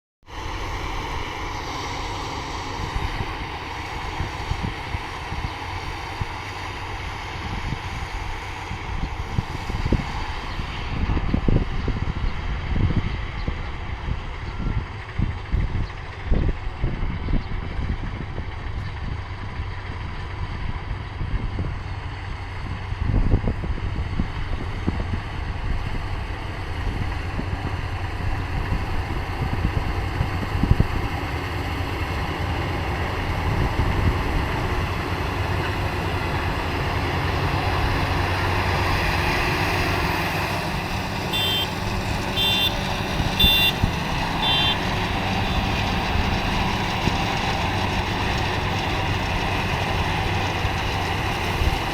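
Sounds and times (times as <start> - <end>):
harvester engine rumbling: 0.3 - 51.9
short electronic beeps: 41.3 - 41.8, 42.4 - 44.8.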